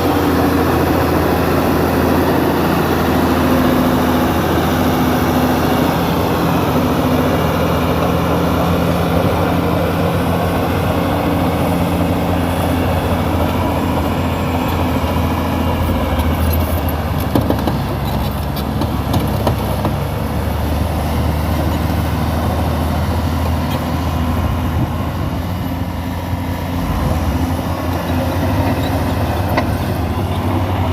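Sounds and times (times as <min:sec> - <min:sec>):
bulldozer diesel engine running: 0:00.0 - 0:30.9.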